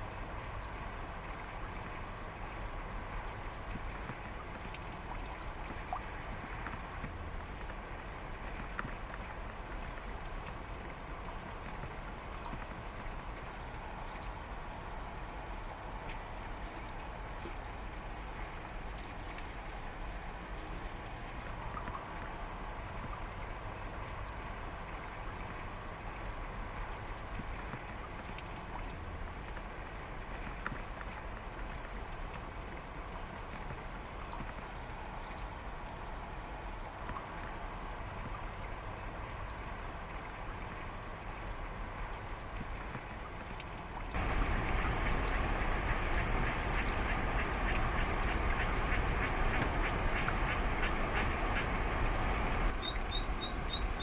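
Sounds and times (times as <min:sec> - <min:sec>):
raindrop ticks: 0:00.0 - 0:54.0
rain heard inside car: 0:43.8 - 0:54.0.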